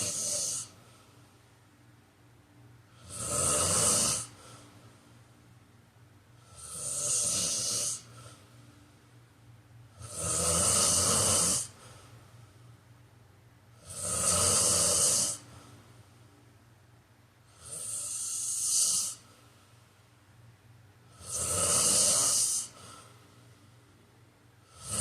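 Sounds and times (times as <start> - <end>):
man snoring: 0.0 - 0.8, 3.0 - 4.6, 6.4 - 8.3, 10.0 - 11.8, 13.8 - 15.5, 17.5 - 19.3, 21.1 - 23.1, 24.7 - 25.0.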